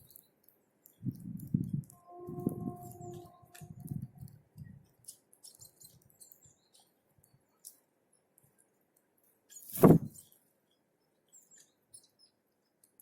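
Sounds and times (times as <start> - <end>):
small birds chirping: 0.0 - 1.8, 3.8 - 13.0
loud thump: 9.8 - 10.1.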